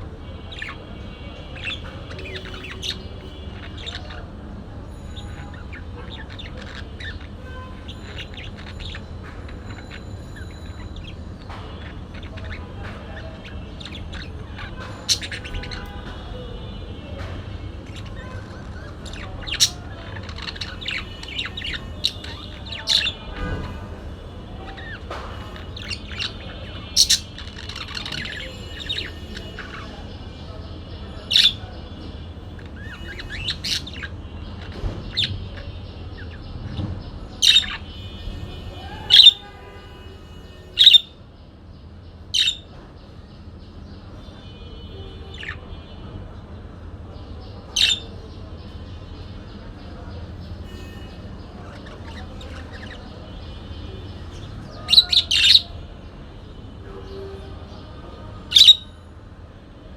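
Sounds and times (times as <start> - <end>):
parakeets chirping and chattering: 0.0 - 41.2, 41.8 - 59.9
shrill parakeet squawks: 0.4 - 4.3, 4.9 - 16.2, 17.8 - 23.8, 24.6 - 30.5, 32.6 - 36.3, 37.4 - 41.2, 42.3 - 42.7, 45.3 - 45.7, 47.6 - 48.1, 50.6 - 55.8, 58.5 - 58.9.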